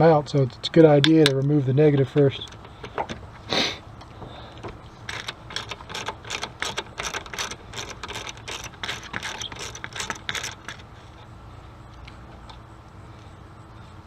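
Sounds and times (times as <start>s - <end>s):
ratchet wrench clicking: 1.0s - 3.2s, 5.0s - 10.9s.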